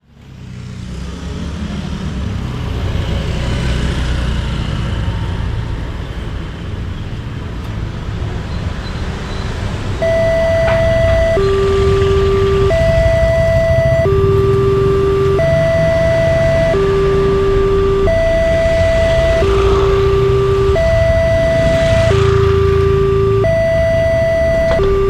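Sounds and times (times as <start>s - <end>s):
low rumble of road traffic: 0.0s - 25.0s
level crossing warning siren: 10.0s - 25.0s.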